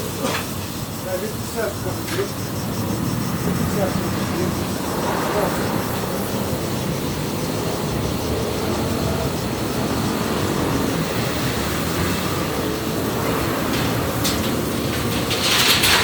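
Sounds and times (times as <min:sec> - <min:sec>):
low mechanical rumble: 0:12.7 - 0:16.0.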